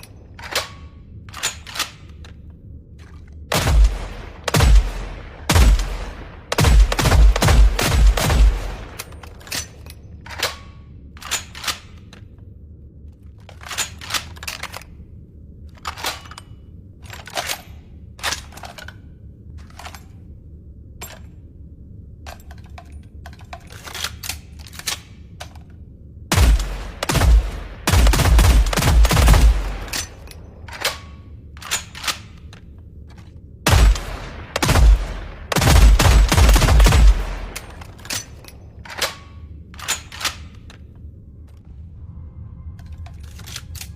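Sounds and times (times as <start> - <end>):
rifle rapid fire bursts: 33.7 - 37.6.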